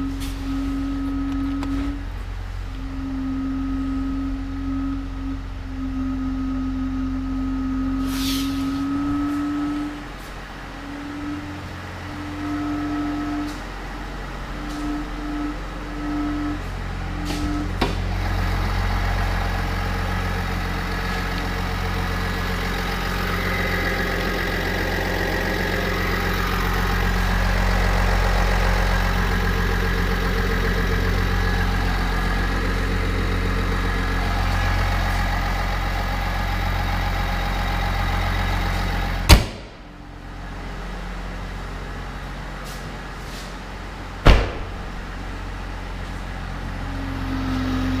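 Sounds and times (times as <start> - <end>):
diesel engine idling: 0.0 - 48.0
sharp thump: 39.3 - 39.8, 44.2 - 44.9.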